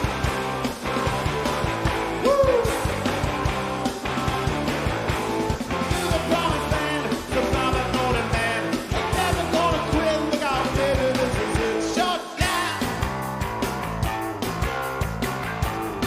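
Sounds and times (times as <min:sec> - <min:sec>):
live rock band playing: 0:00.0 - 0:16.0
shouted sung lead vocal: 0:05.9 - 0:13.2.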